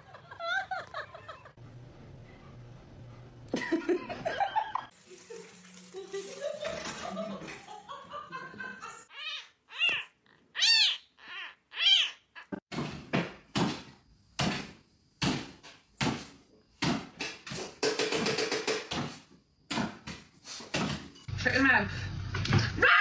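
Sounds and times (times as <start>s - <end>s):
cat meowing: 9.1s - 12.6s.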